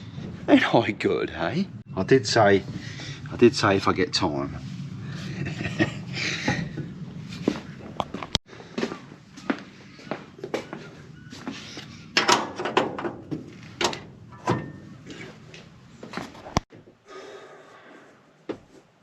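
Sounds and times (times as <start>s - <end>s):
knocks clunks and rattles: 6.3s - 8.4s, 12.2s - 16.6s.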